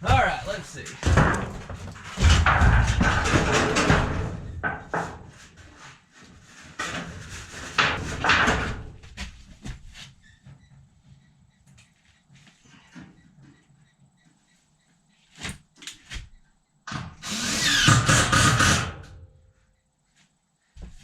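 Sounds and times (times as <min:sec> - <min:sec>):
tin sheet knocking and rattling: 0:00.0 - 0:05.5, 0:06.7 - 0:09.8.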